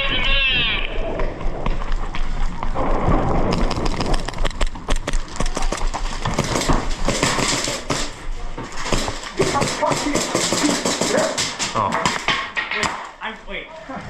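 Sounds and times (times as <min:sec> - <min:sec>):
airsoft guns firing: 0:05.2 - 0:13.2.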